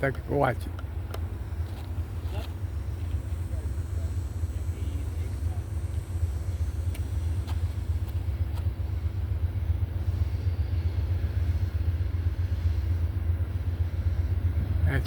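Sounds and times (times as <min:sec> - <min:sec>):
passenger train rumbling by: 0:00.0 - 0:15.0.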